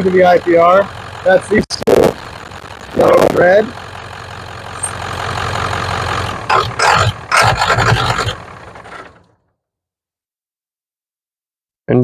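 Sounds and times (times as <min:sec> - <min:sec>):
diesel engine idling: 0:00.0 - 0:01.6, 0:02.2 - 0:09.4.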